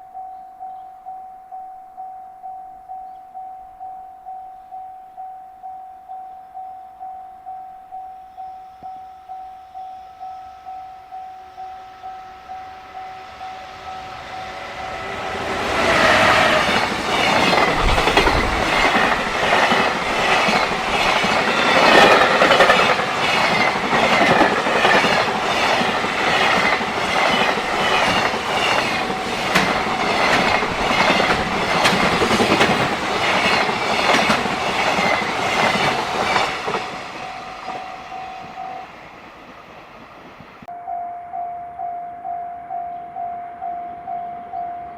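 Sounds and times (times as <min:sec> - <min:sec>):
crossing warning bell ringing: 0:00.0 - 0:39.0
freight train passing: 0:09.3 - 0:40.7
wagon wheels clacking on rail joints: 0:15.7 - 0:38.6.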